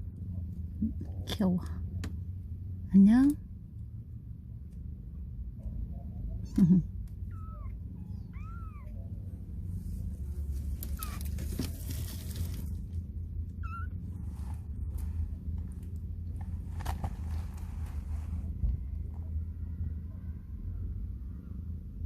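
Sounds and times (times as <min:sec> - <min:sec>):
kitten mewing: 0:06.5 - 0:09.2.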